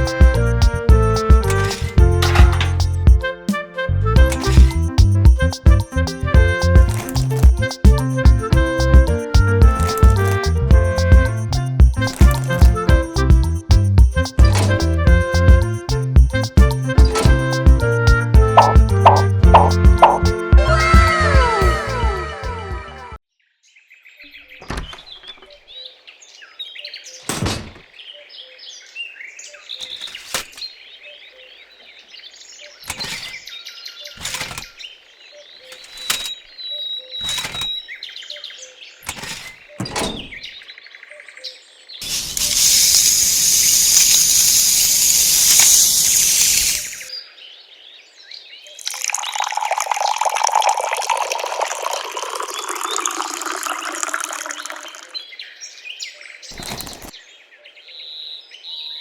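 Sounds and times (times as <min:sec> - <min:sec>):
birds chirping: 0:18.4 - 0:20.5, 0:24.2 - 0:59.0
sharp knocks and taps: 0:18.5 - 0:20.3
loud rushing hiss: 0:42.0 - 0:47.1.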